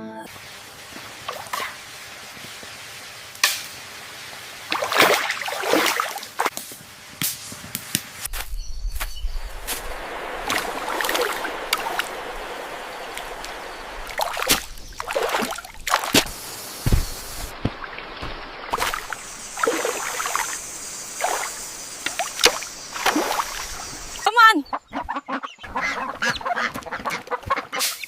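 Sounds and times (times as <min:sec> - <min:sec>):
splashes and knocks: 0:04.7 - 0:06.5, 0:09.6 - 0:24.2
water trickling: 0:09.4 - 0:24.4.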